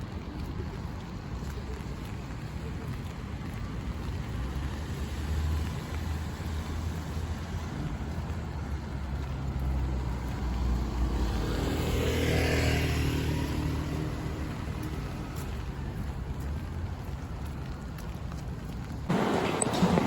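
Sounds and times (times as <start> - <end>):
car passing on wet street: 0.0 - 20.0
rain hissing: 19.0 - 20.0.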